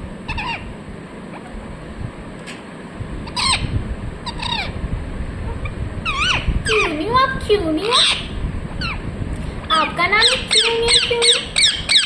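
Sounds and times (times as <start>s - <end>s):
low background rumble: 0.0s - 12.0s
parrot chirp: 0.3s - 0.7s, 3.2s - 4.8s, 5.6s - 7.0s, 7.8s - 9.0s, 9.6s - 12.0s.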